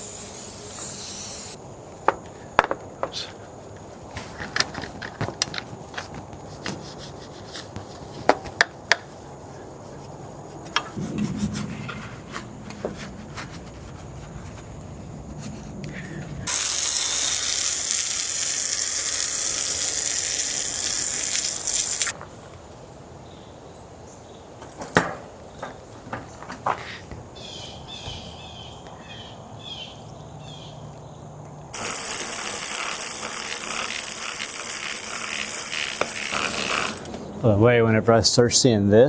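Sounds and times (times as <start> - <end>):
spray hissing: 0.0 - 1.6, 16.5 - 22.1.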